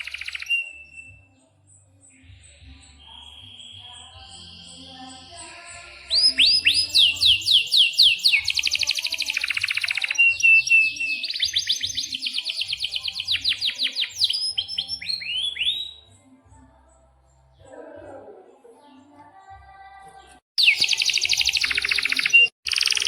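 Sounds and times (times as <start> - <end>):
canary singing trills: 0.0 - 19.5, 20.2 - 23.0.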